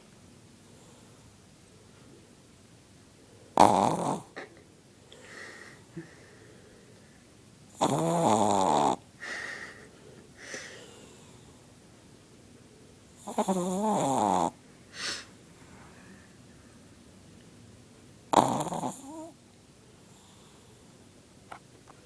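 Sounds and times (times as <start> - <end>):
dog snoring loudly: 3.6 - 4.4, 7.7 - 9.0, 13.2 - 14.6, 18.3 - 19.4.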